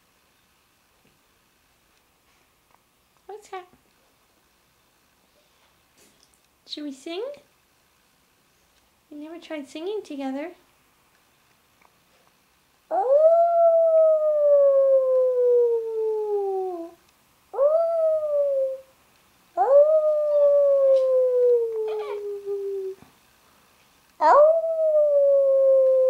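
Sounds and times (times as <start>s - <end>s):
puppy howling: 12.9s - 17.0s, 17.6s - 18.9s, 19.6s - 23.0s, 24.2s - 26.0s.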